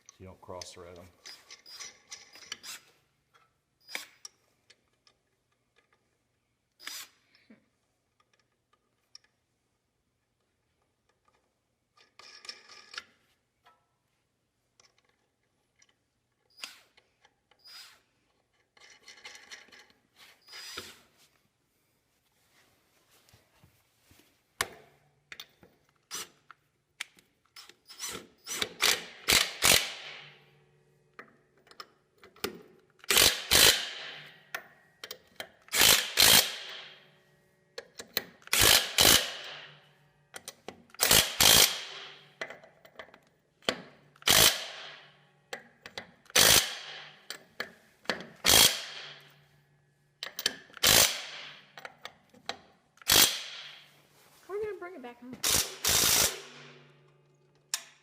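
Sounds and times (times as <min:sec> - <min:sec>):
ratchet wrench clicking: 0:27.6 - 0:30.4, 0:33.0 - 0:37.0, 0:37.8 - 0:39.8, 0:40.4 - 0:43.0, 0:43.8 - 0:49.3, 0:50.2 - 0:52.1, 0:53.0 - 0:53.8, 0:55.4 - 0:56.8.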